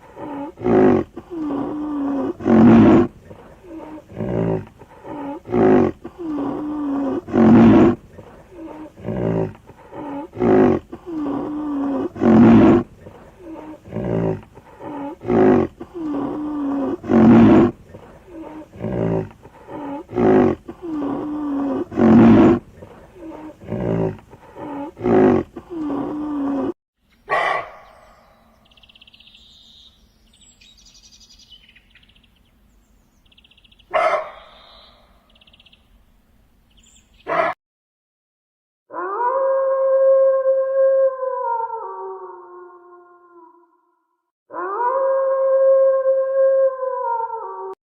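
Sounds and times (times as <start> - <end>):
big cat roaring: 0.0 - 26.8.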